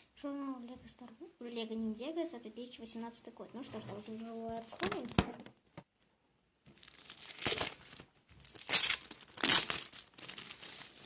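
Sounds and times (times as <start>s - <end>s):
plastic wrapper tearing and crinkling: 6.7s - 11.0s.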